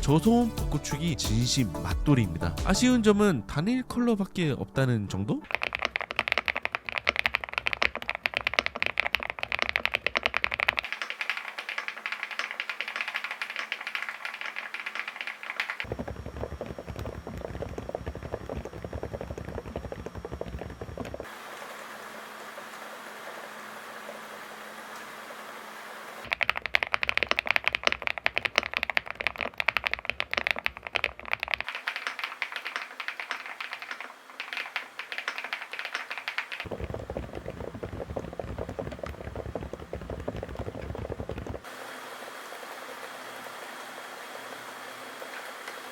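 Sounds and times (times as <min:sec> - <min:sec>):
rapid mechanical keyboard typing: 0:05.5 - 0:21.3, 0:26.2 - 0:41.7.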